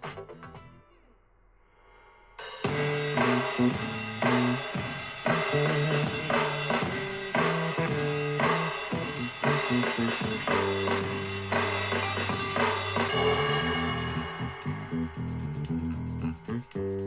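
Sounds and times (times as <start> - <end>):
funk music over speaker: 2.7 - 13.8.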